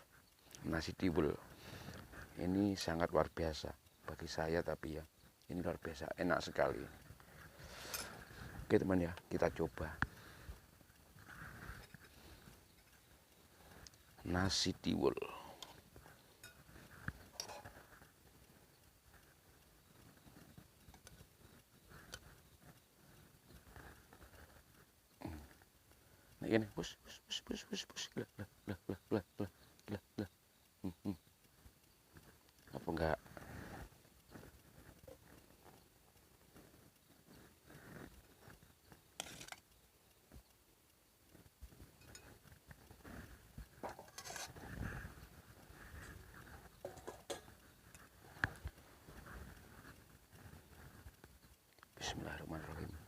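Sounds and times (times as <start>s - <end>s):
utensils clicking and knocking: 16.4s - 17.8s, 39.2s - 39.8s, 43.8s - 44.6s, 46.8s - 47.6s.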